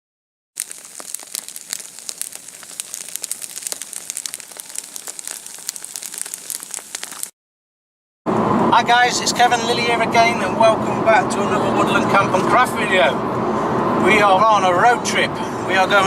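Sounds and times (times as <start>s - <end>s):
dense crackling: 0.6s - 7.4s.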